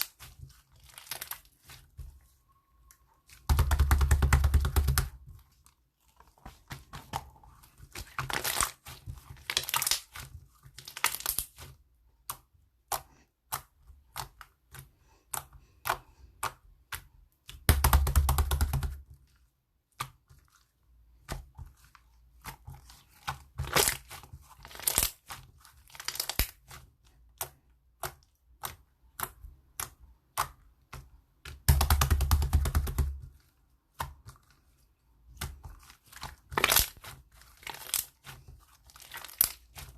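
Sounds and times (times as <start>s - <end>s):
slime crackling and popping: 8.0s - 11.6s, 23.5s - 26.8s, 35.4s - 39.9s.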